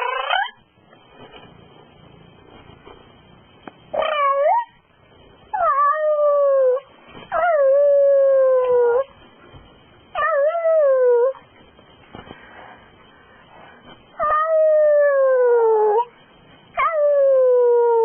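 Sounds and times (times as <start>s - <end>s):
dog howling: 4.0s - 4.8s, 5.5s - 9.1s, 10.2s - 11.4s, 14.2s - 16.1s, 16.8s - 18.0s.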